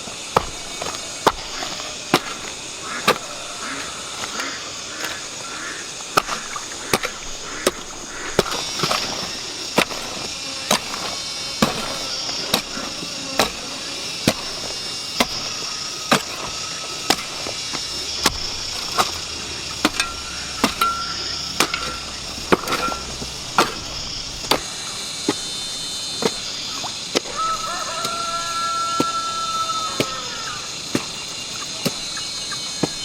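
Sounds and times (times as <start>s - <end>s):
hard sharp chopping strokes: 0.0s - 33.0s.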